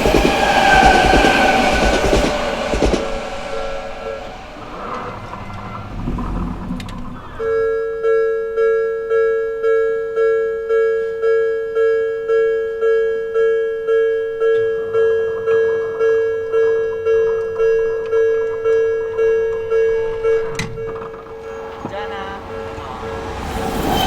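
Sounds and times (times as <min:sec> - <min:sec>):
electric train rumble: 0:00.0 - 0:08.2, 0:14.1 - 0:24.0
faint low rumble: 0:02.4 - 0:07.5
level crossing warning bell: 0:07.4 - 0:24.0.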